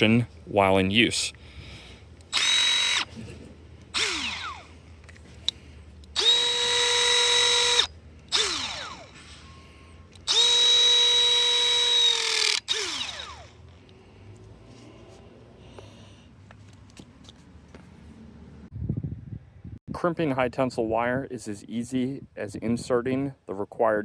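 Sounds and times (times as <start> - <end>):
crimper motor whining: 3.9 - 4.7, 6.0 - 13.9.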